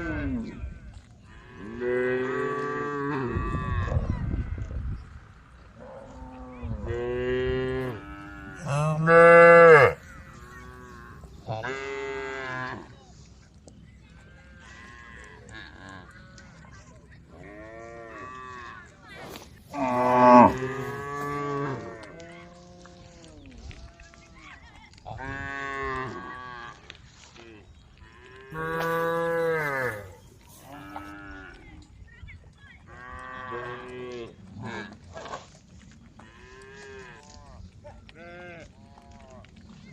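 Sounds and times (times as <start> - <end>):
cattle mooing: 6.2 - 12.8, 19.7 - 21.9, 28.5 - 31.4.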